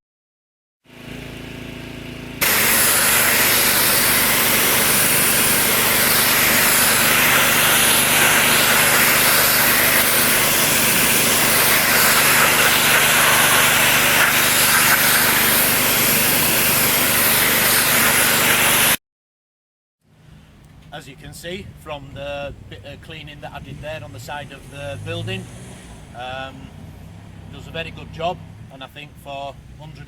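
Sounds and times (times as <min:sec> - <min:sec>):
pressure washer spraying a wall: 0:02.3 - 0:19.0.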